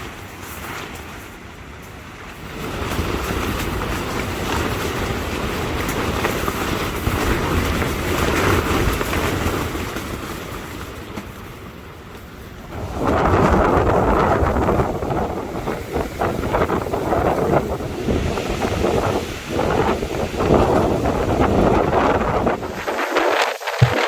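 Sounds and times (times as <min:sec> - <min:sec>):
strong gusting wind: 0:12.4 - 0:24.0.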